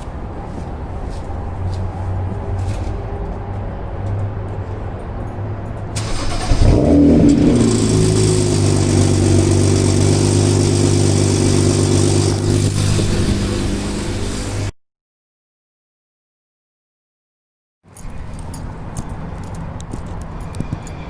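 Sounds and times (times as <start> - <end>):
car engine starting and idling: 5.9 - 14.7.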